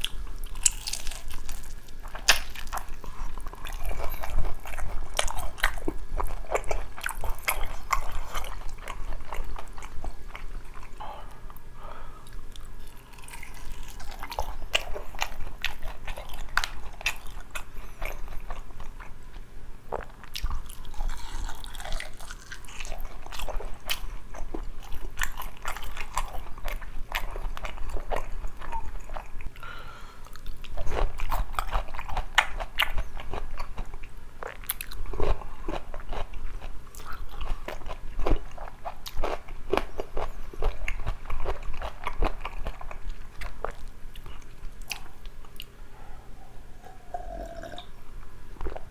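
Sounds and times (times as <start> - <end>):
chewing: 0.0 - 47.9, 48.6 - 48.9
crisp crunches of fried chicken: 20.7 - 23.6.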